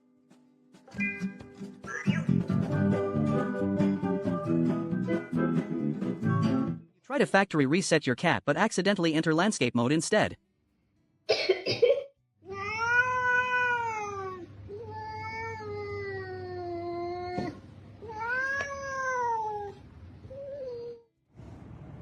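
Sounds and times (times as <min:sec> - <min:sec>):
cat meowing: 0:12.5 - 0:19.8.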